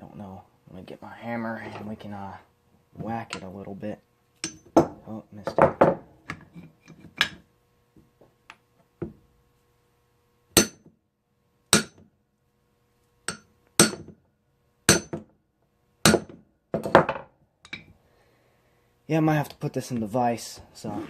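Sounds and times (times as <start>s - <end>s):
hammer striking metal: 10.6s - 10.8s, 11.7s - 12.0s, 13.3s - 14.1s, 14.9s - 15.2s, 16.0s - 16.3s.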